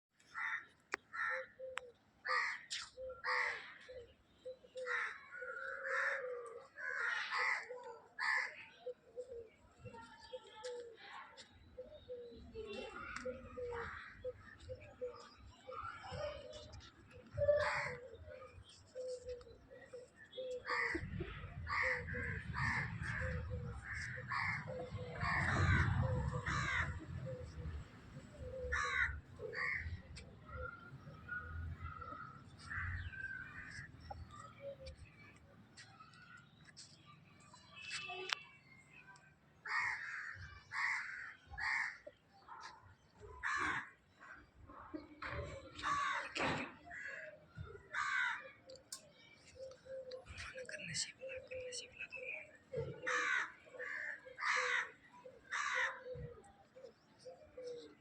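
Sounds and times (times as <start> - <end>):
harsh bird calls: 0.2 - 10.5, 11.7 - 42.5.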